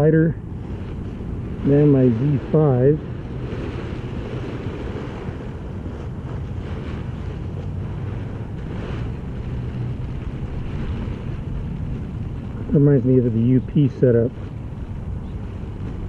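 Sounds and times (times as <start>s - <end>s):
wind noise on microphone: 0.0s - 16.0s
fabric rustling: 0.6s - 12.8s.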